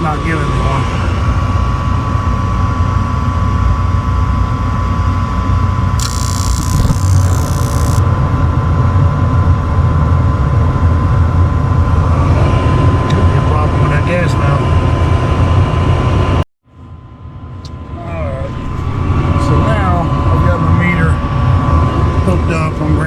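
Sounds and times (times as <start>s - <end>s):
thin steady whine: 6.0s - 8.0s.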